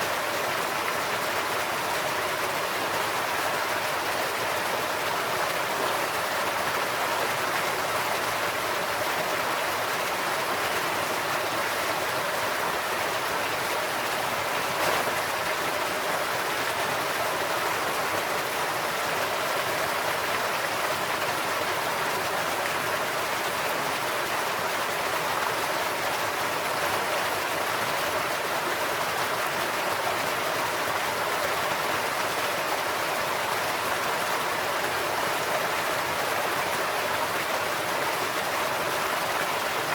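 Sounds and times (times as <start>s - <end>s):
stream water rushing and splashing: 0.0s - 39.9s.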